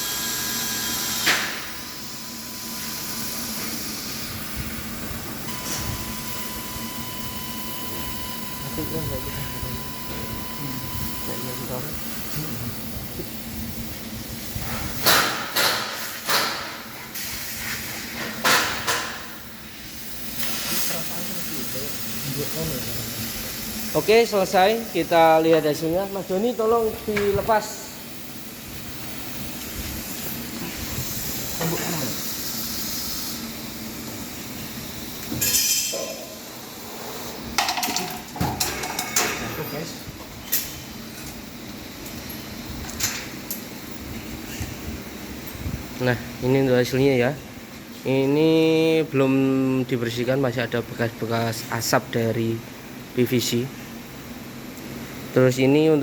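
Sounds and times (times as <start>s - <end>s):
laser cutter low hum: 0.0s - 17.2s, 18.4s - 37.6s
machine and air hiss: 0.0s - 50.5s
short hissing bursts: 19.7s - 21.2s, 29.1s - 33.7s.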